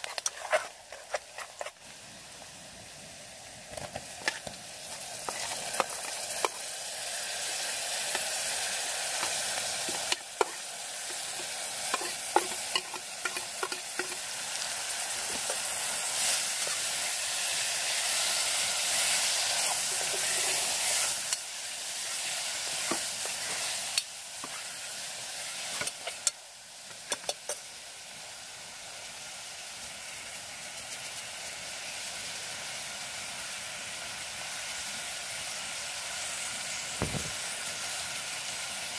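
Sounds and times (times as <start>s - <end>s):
metal utensil scraping a pan: 0.0s - 1.8s, 9.1s - 14.4s, 19.5s - 21.1s
food sizzling in a pan: 0.0s - 38.9s.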